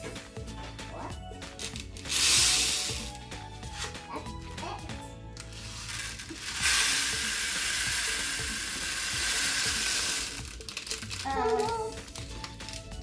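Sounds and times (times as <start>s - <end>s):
water beads pouring into tray: 1.6s - 3.2s, 5.4s - 11.3s.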